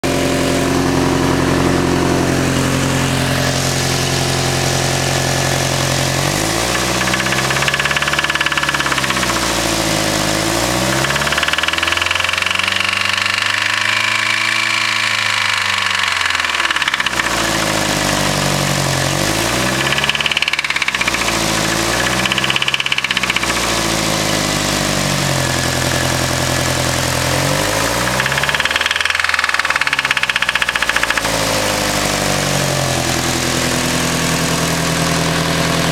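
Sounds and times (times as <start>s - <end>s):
car engine idling and revving: 0.0s - 35.9s
engine bearing knocking: 6.3s - 24.5s, 27.4s - 31.5s.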